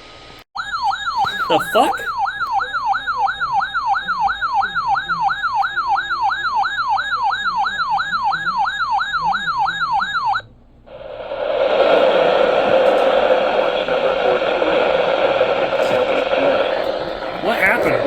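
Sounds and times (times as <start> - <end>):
electronic siren yelp tone: 0.6 - 10.5, 11.8 - 18.0
radio static hiss: 1.1 - 2.2, 10.6 - 18.0.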